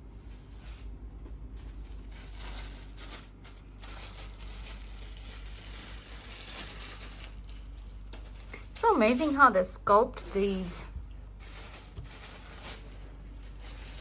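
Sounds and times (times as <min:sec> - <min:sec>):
packaging rustling and crinkling: 0:00.4 - 0:14.0.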